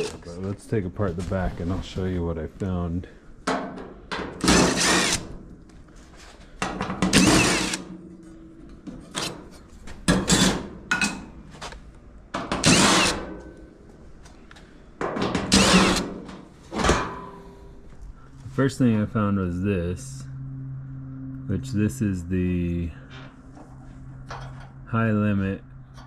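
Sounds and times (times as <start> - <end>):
power drill bursts: 4.4 - 5.2, 7.1 - 7.8, 12.6 - 13.2, 15.5 - 16.2.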